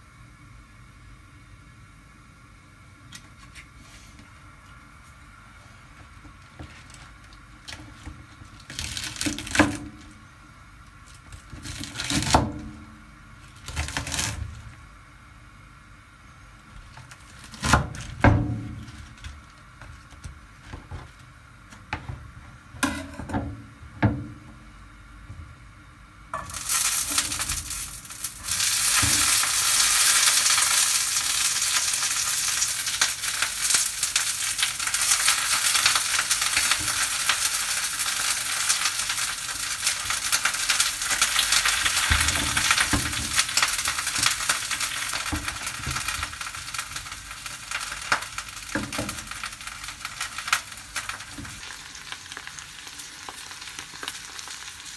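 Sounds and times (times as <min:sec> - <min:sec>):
food sizzling in frying pan: 0:26.3 - 0:54.9.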